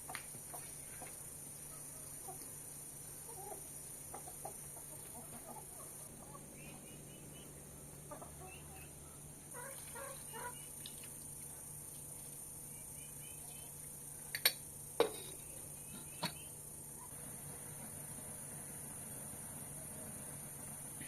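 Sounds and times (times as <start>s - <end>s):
chickens clucking: 0.0s - 2.6s, 3.2s - 10.8s.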